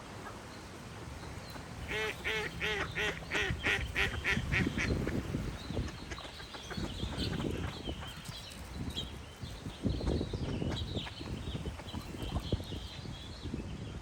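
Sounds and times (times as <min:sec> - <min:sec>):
duck quacking: 0:01.9 - 0:05.2.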